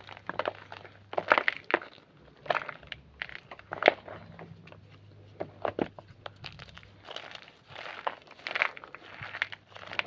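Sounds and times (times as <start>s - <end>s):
chalk crunching and crumbling: 0.0s - 10.0s.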